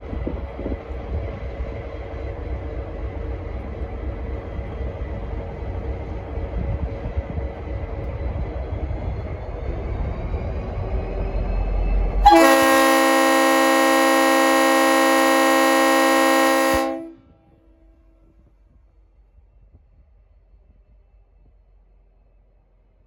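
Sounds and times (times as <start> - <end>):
diesel locomotive rumbling: 0.0 - 18.0
air horn chord: 12.2 - 17.2.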